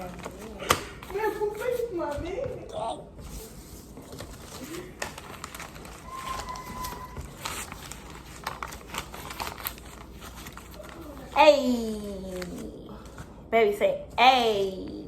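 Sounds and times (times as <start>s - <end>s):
bird whistle: 6.0s - 7.2s.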